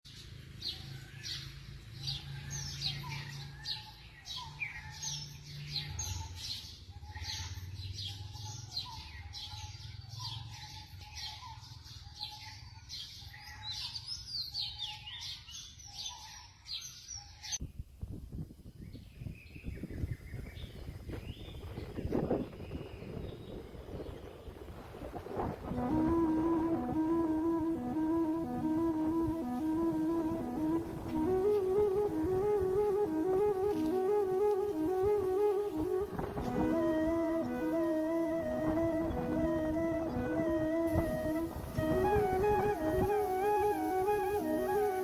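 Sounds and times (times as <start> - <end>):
many birds chirping: 0.1 - 17.6.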